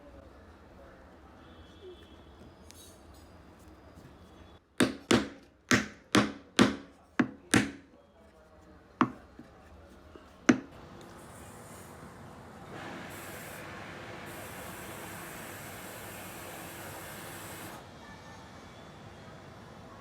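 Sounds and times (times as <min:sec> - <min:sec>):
sharp wooden knocks: 0:04.8 - 0:07.8, 0:09.0 - 0:09.2, 0:10.5 - 0:10.7.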